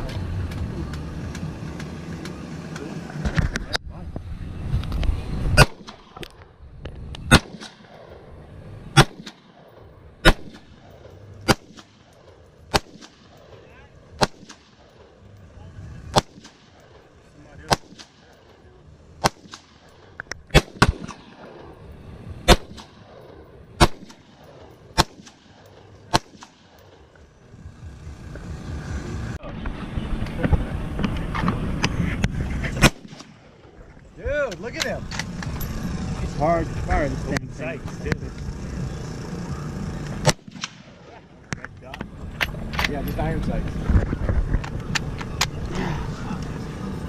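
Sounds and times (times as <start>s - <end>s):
rifle shots with echo: 5.6s - 6.4s, 7.3s - 15.3s, 16.0s - 21.8s, 22.4s - 27.1s, 32.8s - 33.8s, 40.2s - 41.2s.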